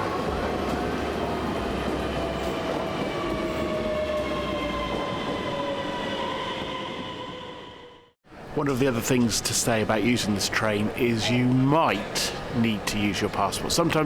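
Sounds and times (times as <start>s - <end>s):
electric train rumble and whine: 0.0s - 8.7s.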